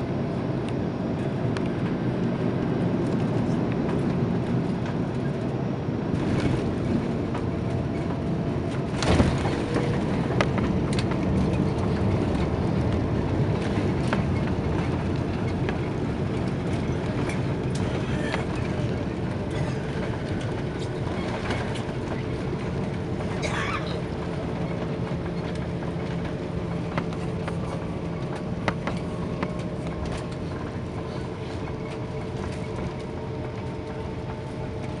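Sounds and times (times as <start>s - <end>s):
airliner cabin rumble: 0.0s - 35.0s.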